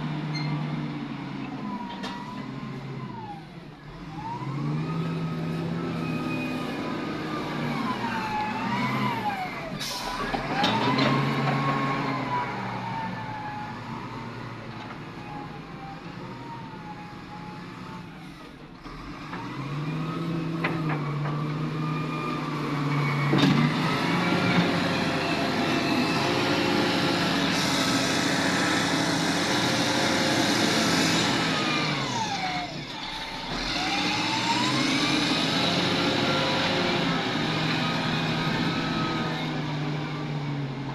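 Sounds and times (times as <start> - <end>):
excavator diesel engine revving: 0.0 - 40.9
hydraulic whine: 22.9 - 39.9.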